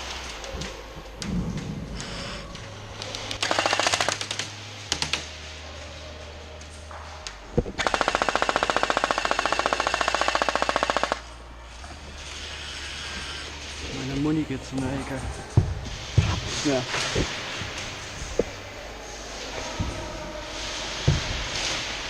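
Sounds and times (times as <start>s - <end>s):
toy machine gun bursts: 3.4s - 4.4s, 7.8s - 11.2s.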